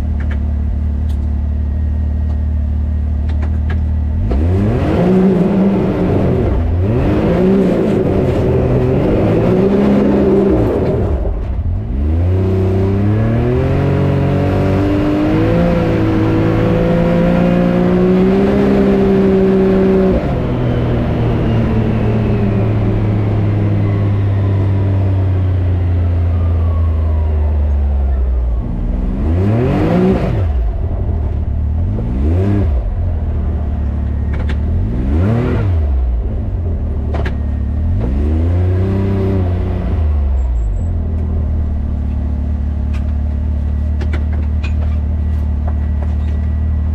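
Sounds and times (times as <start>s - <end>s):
engine revving: 4.1s - 44.3s.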